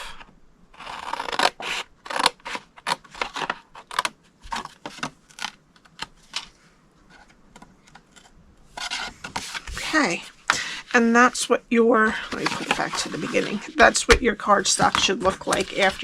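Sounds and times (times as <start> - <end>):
paper rustling: 12.1 - 16.0.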